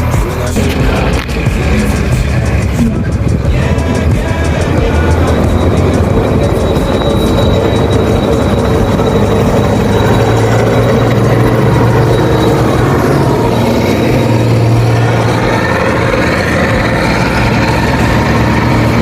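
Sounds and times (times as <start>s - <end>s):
diesel engine hum: 0.0s - 19.0s
faint high whine: 4.3s - 19.0s.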